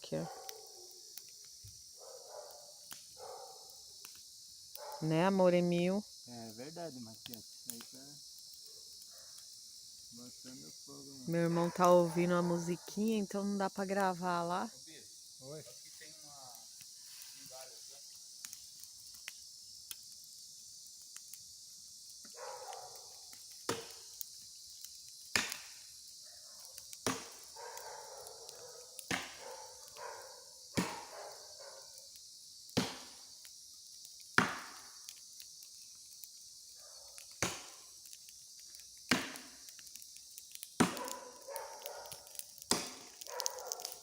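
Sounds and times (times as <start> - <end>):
cicada drone: 0.0 - 44.0
tool chopping wood: 40.8 - 41.1, 42.7 - 43.1.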